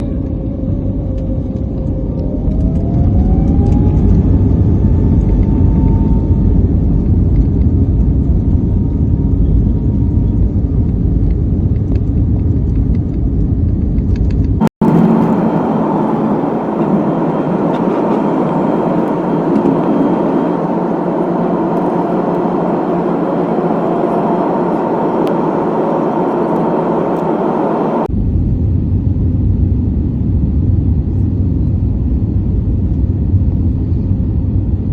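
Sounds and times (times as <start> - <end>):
jet engine cabin rumble: 0.0 - 34.9
faint rising tone: 14.8 - 28.1.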